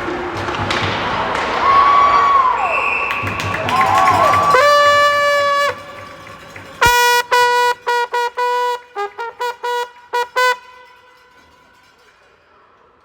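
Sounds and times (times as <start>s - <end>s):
brass horn blasts: 3.7s - 12.0s.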